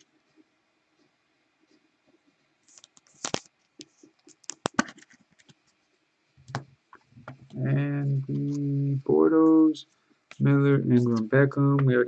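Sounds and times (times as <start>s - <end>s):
cards clicking and rustling: 2.7s - 5.6s.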